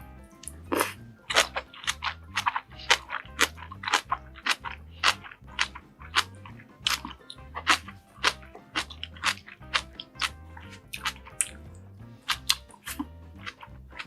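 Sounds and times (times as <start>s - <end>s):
person chewing and biting food: 0.0s - 14.0s
soft background music: 0.0s - 14.0s.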